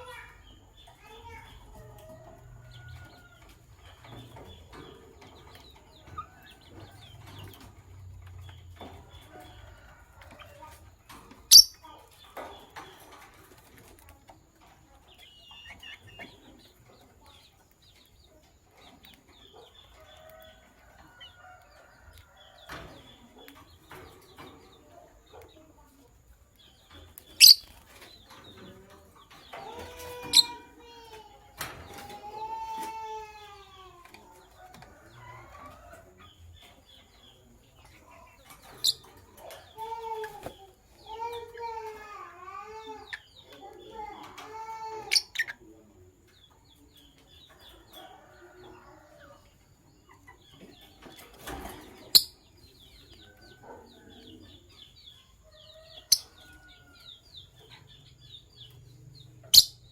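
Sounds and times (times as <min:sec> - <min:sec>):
lovebirds chattering: 0:00.0 - 0:59.9
shrill bird chirps: 0:11.5 - 0:11.9.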